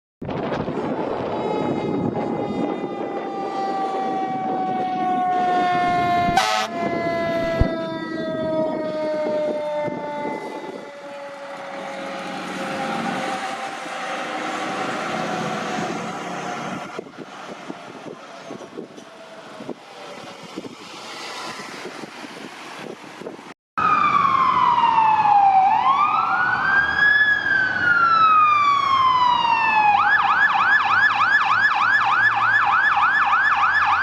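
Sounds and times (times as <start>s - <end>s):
passing train noise: 0.3s - 23.5s
train horn blast: 1.4s - 4.3s, 6.3s - 7.6s.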